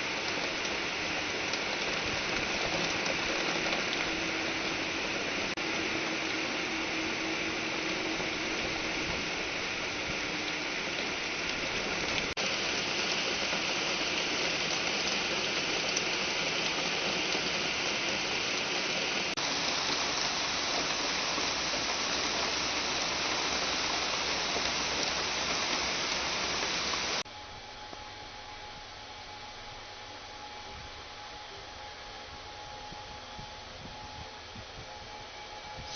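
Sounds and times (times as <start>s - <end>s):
water rushing: 0.0s - 27.2s.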